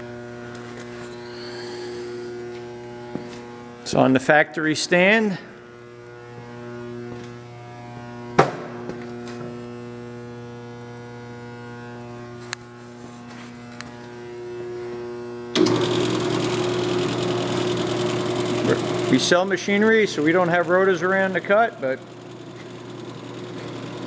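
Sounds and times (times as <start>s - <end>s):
electrical hum: 15.5s - 24.0s
lathe motor running: 15.6s - 24.0s.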